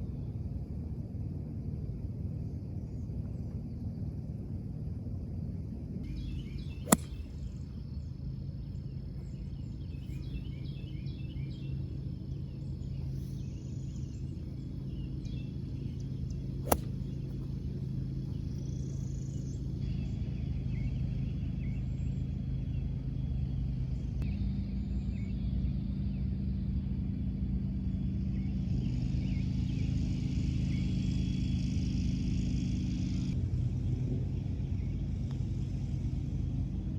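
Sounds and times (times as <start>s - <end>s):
low outdoor rumble: 0.0s - 30.8s, 31.4s - 36.9s
birds chirping: 6.1s - 22.9s
golf club striking ball: 6.2s - 7.6s, 16.3s - 17.7s.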